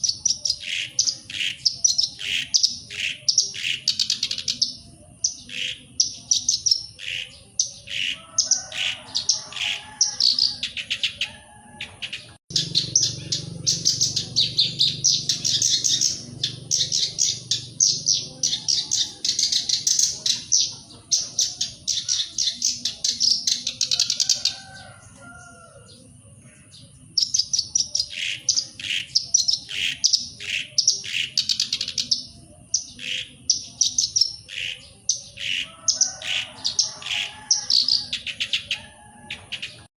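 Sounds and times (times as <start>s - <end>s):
warbler singing scratchy notes: 12.1s - 26.0s.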